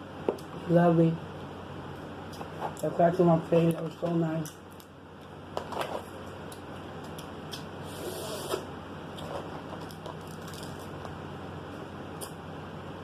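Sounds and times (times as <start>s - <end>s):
crackling rustle: 9.1s - 11.1s.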